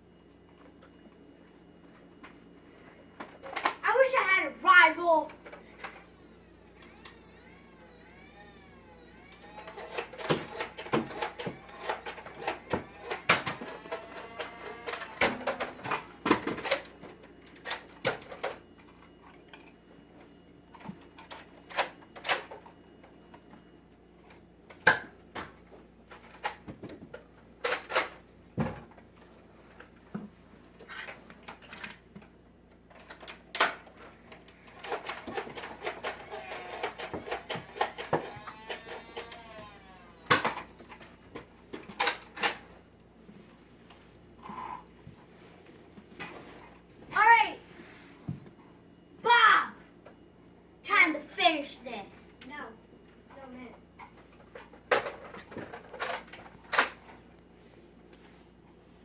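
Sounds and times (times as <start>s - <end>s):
plastic toy blaster clicks and knocks: 6.8s - 17.0s, 26.1s - 28.7s, 34.5s - 42.6s, 54.5s - 57.0s.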